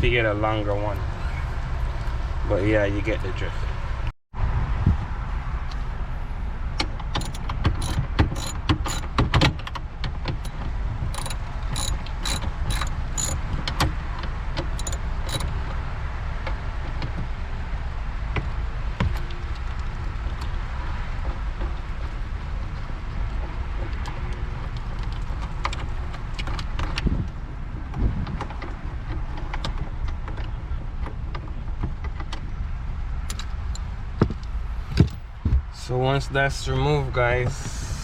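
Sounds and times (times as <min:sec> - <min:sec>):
ratchet clicking and clinking: 0:07.1 - 0:09.5, 0:10.4 - 0:13.8, 0:14.6 - 0:15.5.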